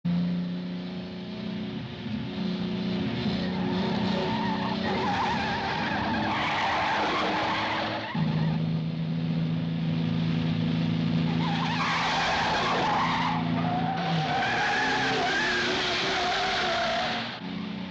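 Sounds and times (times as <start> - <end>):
car engines at high revs: 0.0 - 17.9
tyres squealing: 3.4 - 8.6, 11.3 - 17.4.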